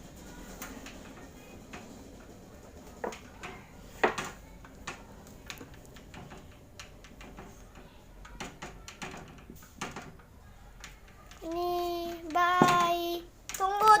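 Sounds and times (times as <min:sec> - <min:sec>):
knocks and clicks of handling: 0:02.9 - 0:14.0.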